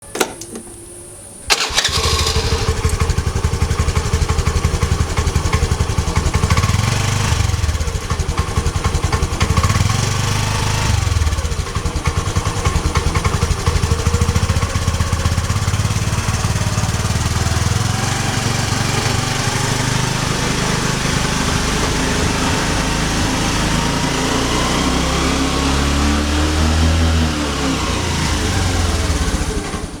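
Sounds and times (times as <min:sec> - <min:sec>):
motorcycle starter click: 0:00.0 - 0:03.6
motorcycle engine running: 0:01.5 - 0:30.0.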